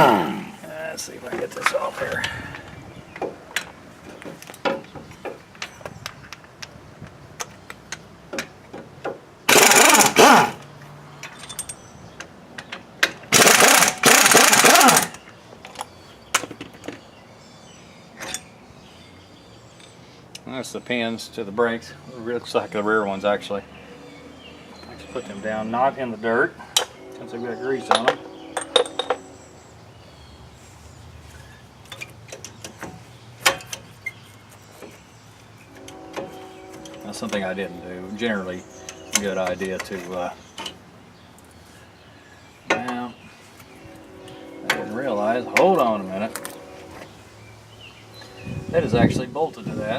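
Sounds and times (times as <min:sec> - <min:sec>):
impact wrench hammering: 0:09.5 - 0:10.6, 0:13.3 - 0:15.2.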